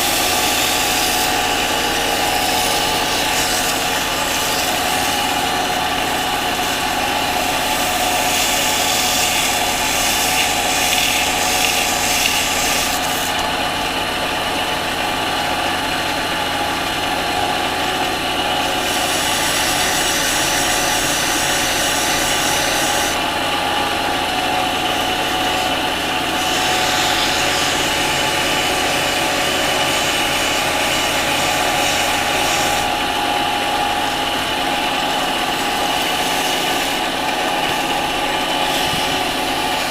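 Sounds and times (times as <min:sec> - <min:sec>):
hiss of cutting on spinning shaft: 0:00.0 - 0:13.4, 0:18.7 - 0:23.2, 0:26.4 - 0:33.0, 0:38.4 - 0:39.9
lathe motor whine: 0:00.0 - 0:39.9.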